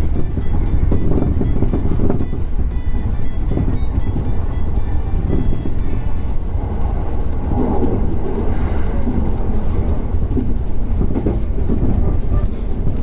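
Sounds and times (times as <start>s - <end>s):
train rumbling: 0.0s - 13.0s.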